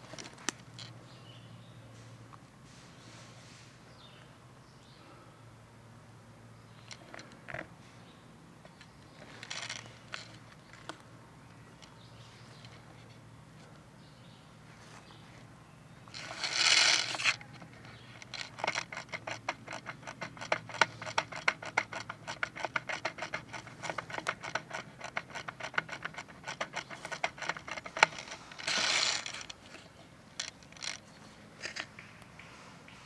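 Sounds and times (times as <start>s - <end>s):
quick ratcheting clicks: 9.2s - 10.9s, 16.1s - 31.0s.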